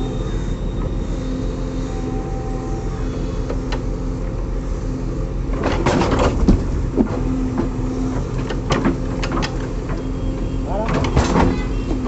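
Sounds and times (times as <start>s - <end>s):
diesel engine running: 0.0s - 12.0s
clanks and knocks: 5.5s - 10.1s, 10.8s - 12.0s.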